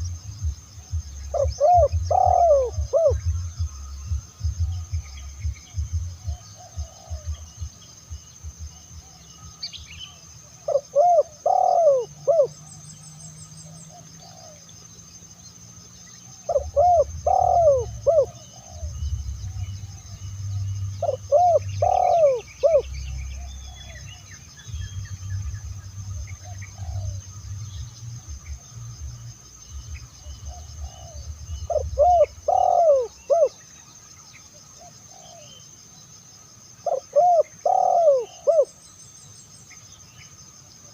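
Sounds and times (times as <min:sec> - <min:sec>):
dove cooing: 0:01.0 - 0:07.8, 0:10.5 - 0:12.7, 0:13.6 - 0:14.6, 0:16.4 - 0:24.3, 0:25.0 - 0:27.8, 0:30.0 - 0:33.6, 0:34.8 - 0:35.6, 0:36.8 - 0:38.7.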